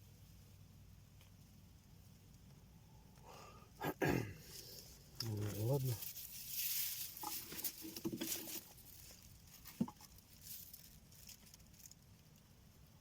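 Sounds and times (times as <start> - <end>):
close rustling and crackling: 4.4 - 12.6.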